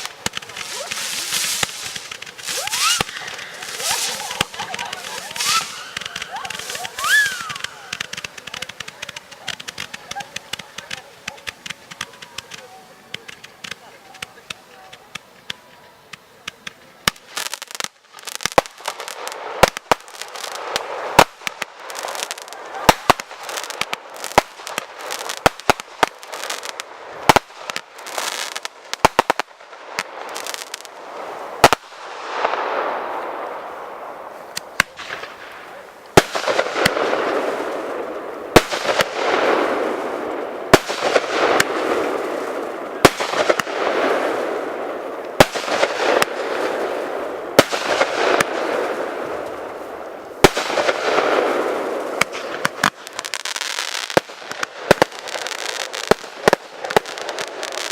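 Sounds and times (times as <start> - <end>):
firework bangs: 0.0 - 57.9
firework crackling hiss: 0.0 - 57.9.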